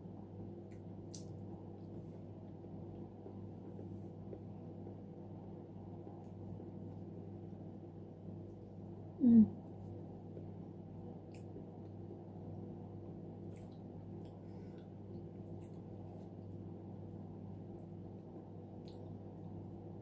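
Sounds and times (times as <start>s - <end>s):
steady low hum: 0.0s - 20.0s
soft mouth clicks and smacks: 0.6s - 2.1s, 11.2s - 12.0s, 13.4s - 16.6s, 17.8s - 19.6s.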